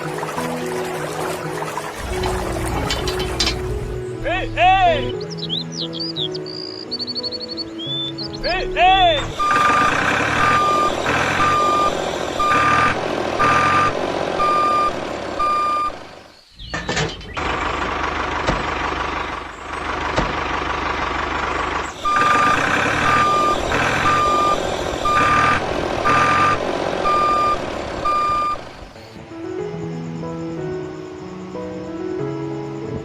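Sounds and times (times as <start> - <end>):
reversing alarm beeping: 9.2 - 16.1, 21.9 - 28.7.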